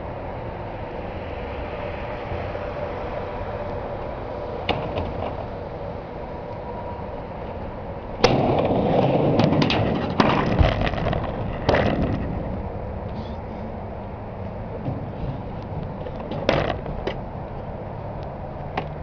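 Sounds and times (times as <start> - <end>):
skateboard wheels rolling: 0.0 - 19.0
skateboard clacking on ramp: 8.2 - 12.6, 14.8 - 17.2.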